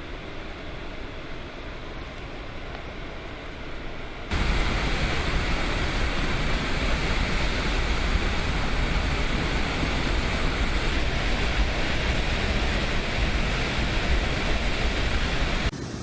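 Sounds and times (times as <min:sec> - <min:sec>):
floodwater rushing: 0:04.3 - 0:15.7.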